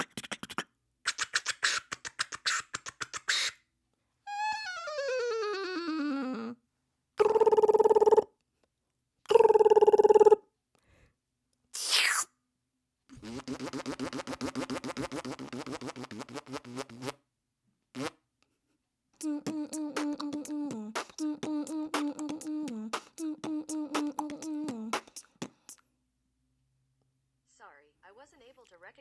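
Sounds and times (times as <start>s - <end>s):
beatboxed galloping horse: 0.0s - 3.5s, 7.2s - 8.3s, 9.3s - 10.4s, 13.1s - 17.2s, 19.2s - 25.8s.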